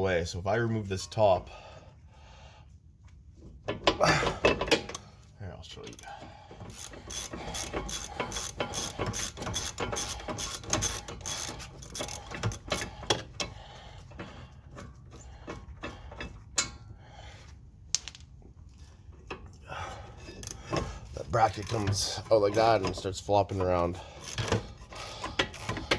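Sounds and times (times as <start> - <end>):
ratchet wrench clicking: 6.7 - 13.0.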